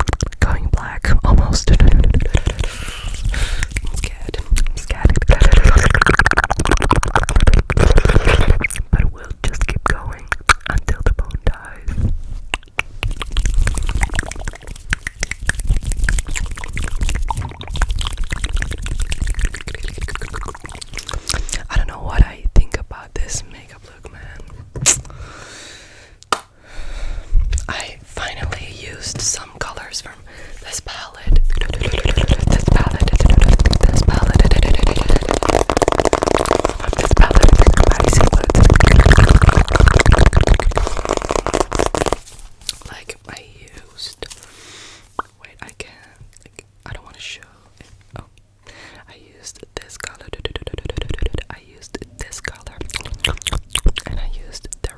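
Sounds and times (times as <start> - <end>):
rubbing against microphone: 0.0 - 9.3, 11.6 - 21.1, 27.4 - 43.1, 50.1 - 53.4
wet mouth clicks and smacks: 0.0 - 11.7, 12.5 - 21.8, 27.5 - 27.9, 30.7 - 44.5, 45.1 - 47.2, 49.5 - 54.9.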